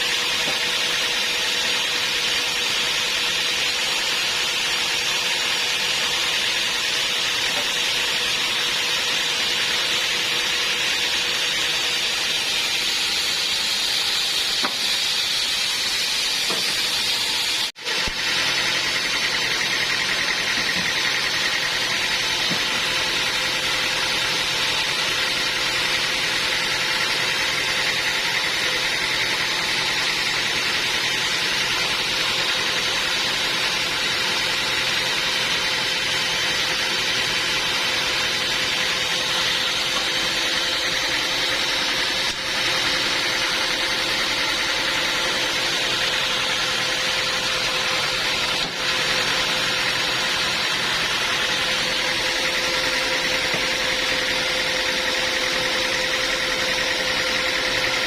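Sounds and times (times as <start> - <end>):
band sawmill running: 0.0 - 58.0.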